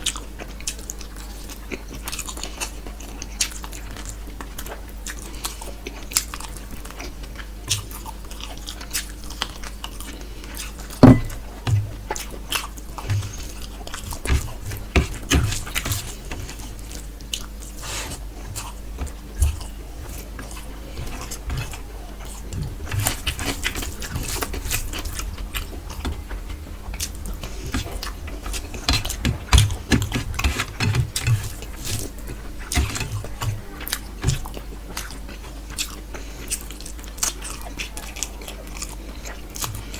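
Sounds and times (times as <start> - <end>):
food crunching: 0.0 - 39.9
wet chewing and mouth smacks: 32.6 - 39.9.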